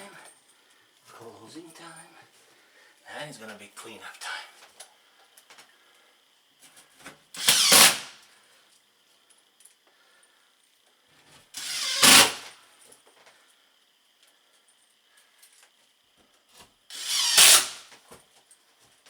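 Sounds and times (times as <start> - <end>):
power drill spinning: 7.4 - 8.2, 11.5 - 12.5, 16.9 - 18.0.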